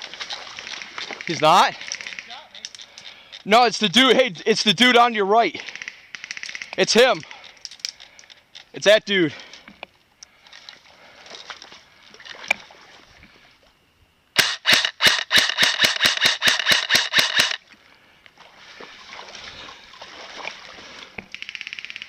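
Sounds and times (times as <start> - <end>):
airsoft gun rapid shots: 14.4 - 17.6.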